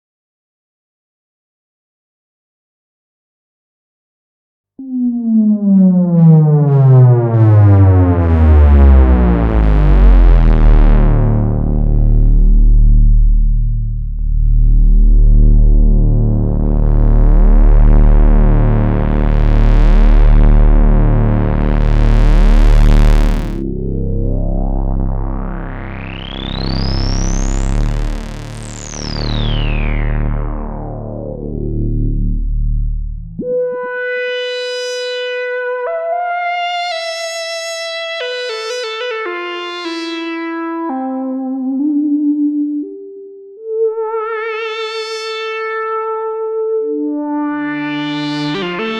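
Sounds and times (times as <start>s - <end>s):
synth sound sweeping upward: 4.8s - 13.5s, 14.2s - 32.8s, 43.6s - 48.9s
buzzy synthesizer bass tone: 4.8s - 48.9s.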